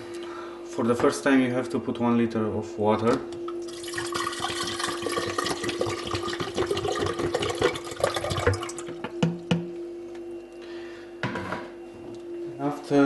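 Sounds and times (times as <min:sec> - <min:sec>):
water pouring and splashing: 0:03.7 - 0:08.9.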